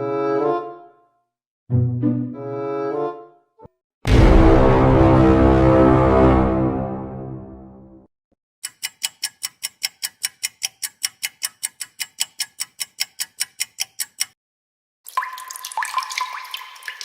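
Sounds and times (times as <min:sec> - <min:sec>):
fast clock ticking: 0:08.6 - 0:14.4.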